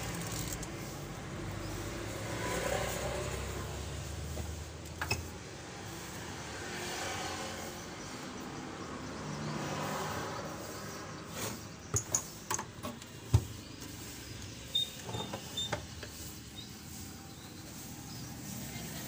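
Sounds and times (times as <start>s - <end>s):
steady background noise: 0.0s - 19.0s
tools clicking and tapping: 11.9s - 13.5s.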